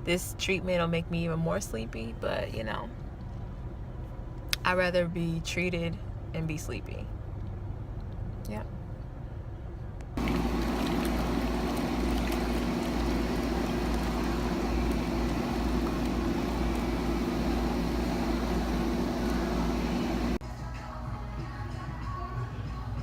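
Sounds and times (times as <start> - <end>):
steady machine hum: 10.2 - 20.4.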